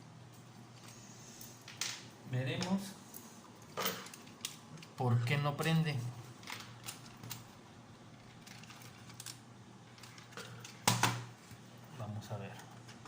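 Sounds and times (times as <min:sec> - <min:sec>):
plastic toy parts rattling: 0:08.2 - 0:10.8.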